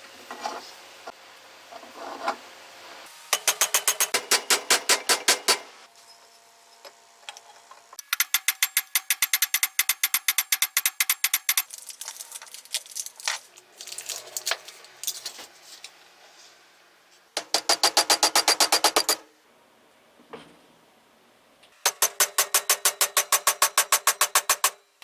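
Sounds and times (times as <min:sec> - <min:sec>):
rapid mechanical clicks: 0:03.4 - 0:05.7, 0:08.0 - 0:13.0, 0:17.4 - 0:19.2, 0:21.8 - 0:24.9.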